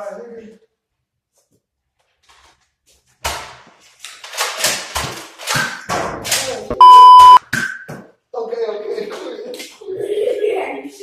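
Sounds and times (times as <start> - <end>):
toy blasters snapping and thudding: 4.1 - 6.6
censor bleep: 6.7 - 7.4.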